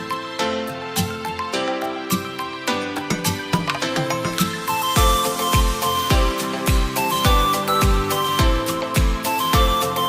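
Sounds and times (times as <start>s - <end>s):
sustained chords over steady beat: 3.8s - 10.0s.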